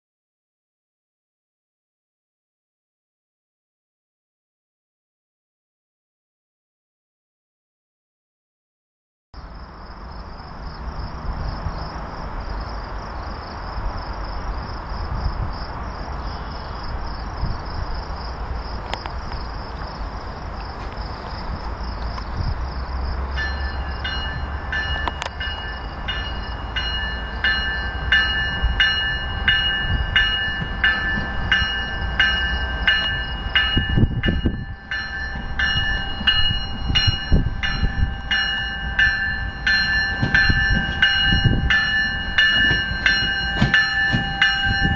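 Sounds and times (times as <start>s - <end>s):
train rumbling: 9.4s - 44.9s
bell ringing: 23.4s - 44.9s.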